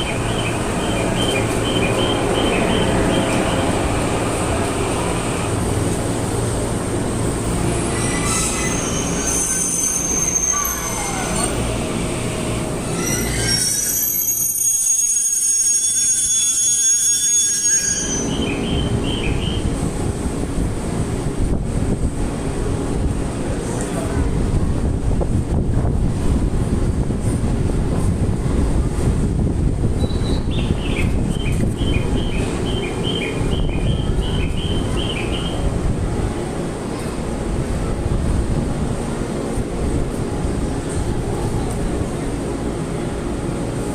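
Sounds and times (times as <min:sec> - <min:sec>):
train wheels and brakes squealing: 0:00.0 - 0:05.5, 0:07.7 - 0:11.8, 0:12.8 - 0:19.7, 0:30.0 - 0:35.7
low train rumble: 0:00.0 - 0:43.9.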